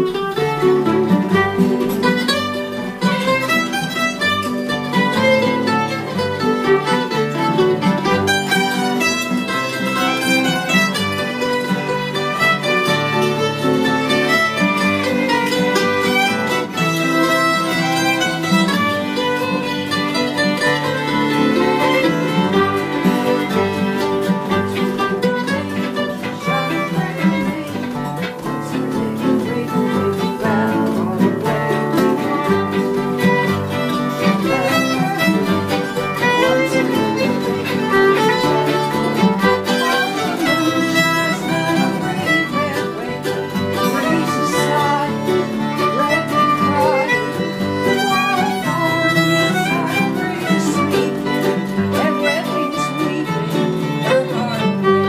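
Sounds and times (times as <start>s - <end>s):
fiddle folk tune: 0.0s - 55.0s
guitar accompaniment: 0.0s - 55.0s.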